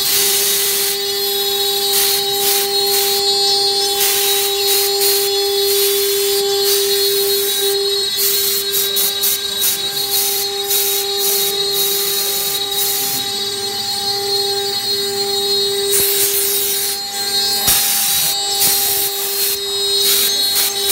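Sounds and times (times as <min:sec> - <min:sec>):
router spindle whine: 0:00.0 - 0:20.9
rough cutting hiss: 0:01.9 - 0:03.2, 0:03.9 - 0:07.5, 0:08.2 - 0:13.2.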